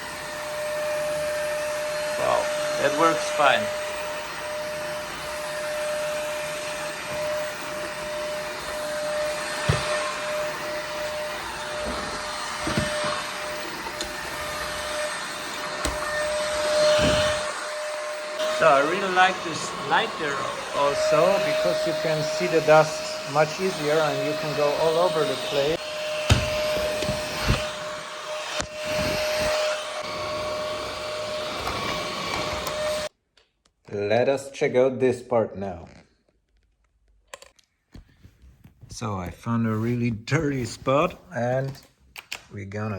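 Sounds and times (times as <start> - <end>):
stick vacuum motor whine: 0.0 - 33.1.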